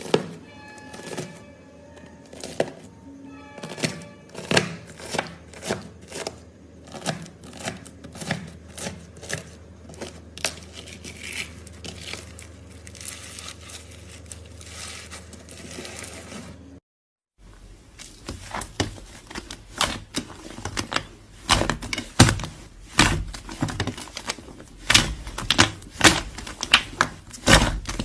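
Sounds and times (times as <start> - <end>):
slime crackling and rustling: 7.0 - 16.8, 17.5 - 28.0.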